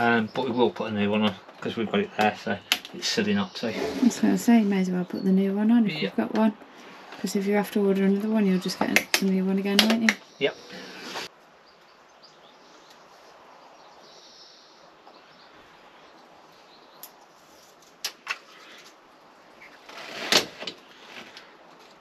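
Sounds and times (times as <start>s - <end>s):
faint steady hiss: 0.0s - 22.0s
short rustle: 17.1s - 22.0s.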